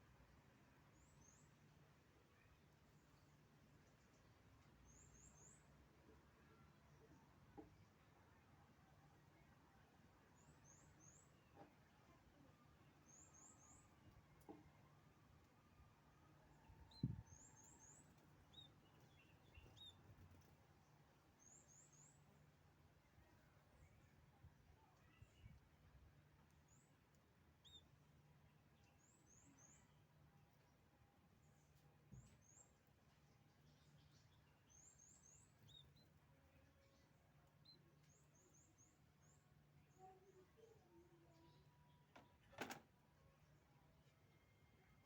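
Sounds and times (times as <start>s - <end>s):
faint high bird chirping: 16.5s - 20.5s, 24.8s - 25.6s, 27.6s - 30.7s, 31.4s - 42.4s.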